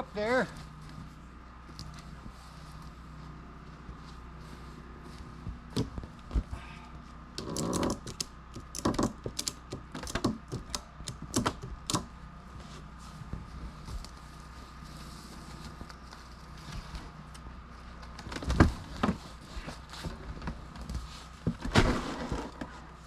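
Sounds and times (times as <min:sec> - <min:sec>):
log and strap clicking and knocking: 0:07.4 - 0:12.1.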